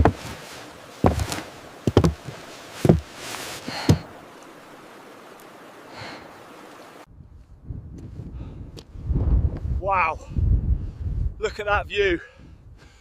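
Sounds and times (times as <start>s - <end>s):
heavy footsteps on trail: 0.0s - 4.6s
quiet steady hiss: 0.0s - 7.4s.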